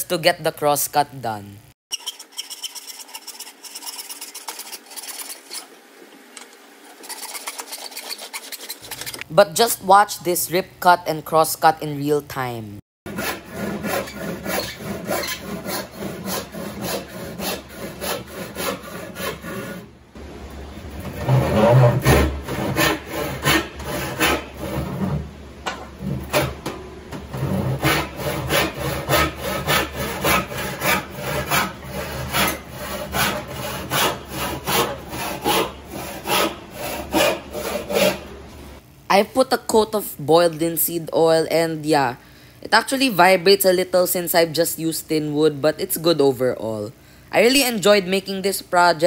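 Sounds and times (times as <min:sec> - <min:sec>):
hand saw cutting wood: 0:01.9 - 0:05.8, 0:06.4 - 0:09.3, 0:13.1 - 0:19.9, 0:21.0 - 0:25.2, 0:26.0 - 0:26.6, 0:27.3 - 0:38.4.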